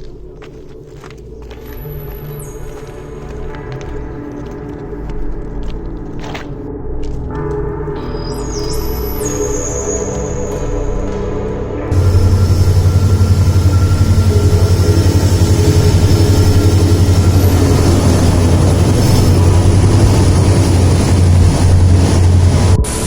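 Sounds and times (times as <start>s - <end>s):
vehicle engine throbbing: 10.0s - 23.0s.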